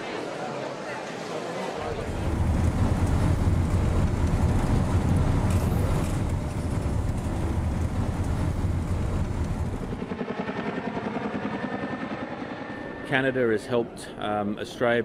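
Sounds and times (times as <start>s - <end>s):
loud engine rumble: 1.8s - 13.0s.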